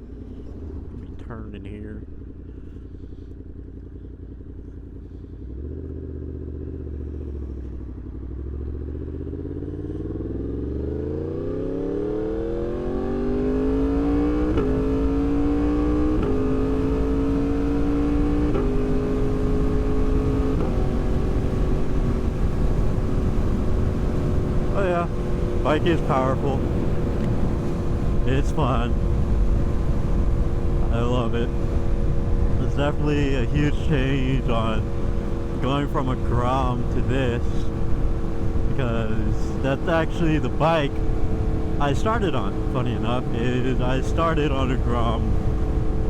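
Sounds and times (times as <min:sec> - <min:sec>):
motorcycle engine accelerating: 0:00.0 - 0:46.0
motorcycle gear shifts: 0:14.0 - 0:28.5.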